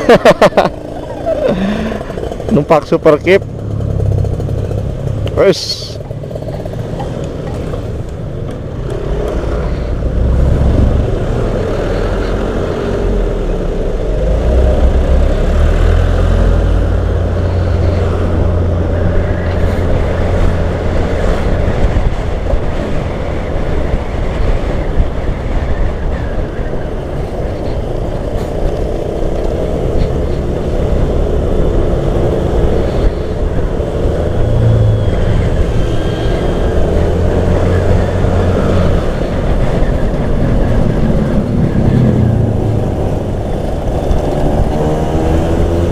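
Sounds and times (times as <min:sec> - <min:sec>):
motorcycle engine running: 0:00.0 - 0:09.3
wind rushing over microphone: 0:06.2 - 0:45.9.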